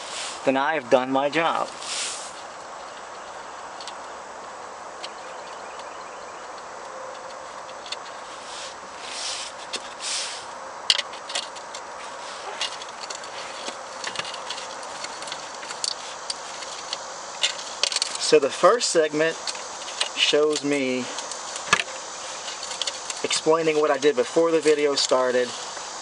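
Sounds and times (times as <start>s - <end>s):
short hissing sounds: 0.0s - 0.5s, 1.6s - 2.5s, 8.2s - 10.6s, 12.0s - 13.8s, 25.4s - 26.0s
steady background hiss: 0.0s - 26.0s.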